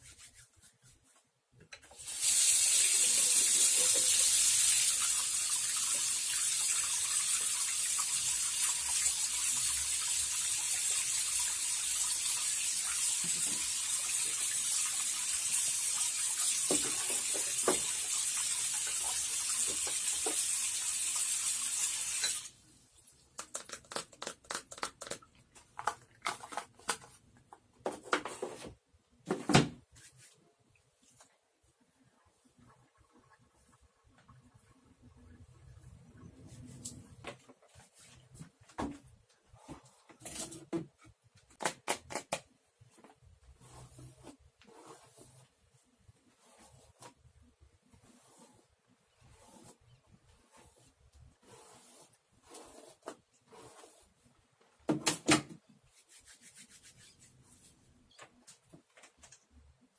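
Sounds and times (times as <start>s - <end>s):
tap running into a sink: 18.8s - 20.6s.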